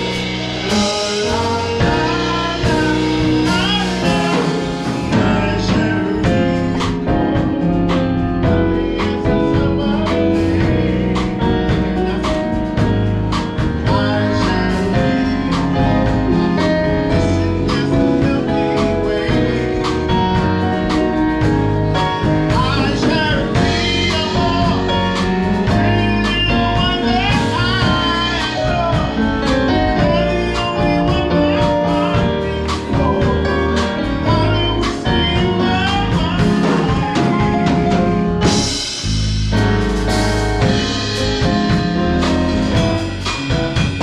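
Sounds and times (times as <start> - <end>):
person singing: 0.0 - 38.1
drum kit: 0.0 - 44.0
guitar: 0.0 - 44.0.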